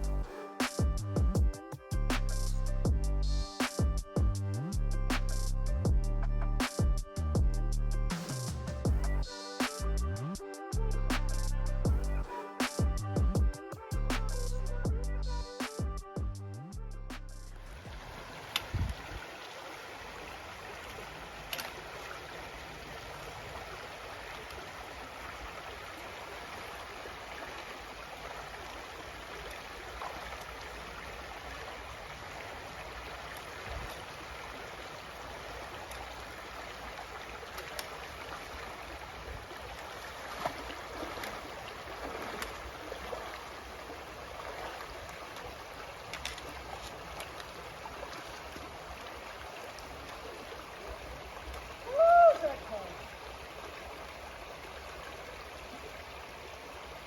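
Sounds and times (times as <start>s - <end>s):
creek water rushing over rocks: 17.6s - 57.0s
faint clicks: 21.5s - 21.8s.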